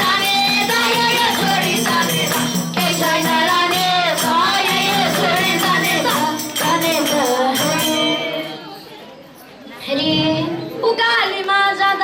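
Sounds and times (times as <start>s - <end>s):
tambourine jingling: 0.0s - 8.8s
young people singing devotional song: 0.0s - 8.8s.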